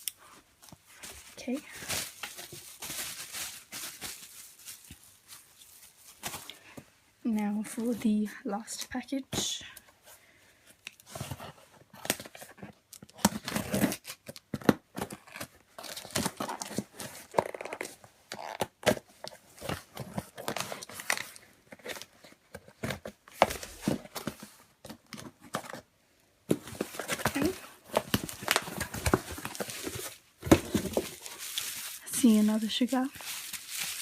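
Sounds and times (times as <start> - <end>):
packaging tearing and crinkling: 1.4 - 6.5, 13.0 - 19.0, 26.6 - 34.0.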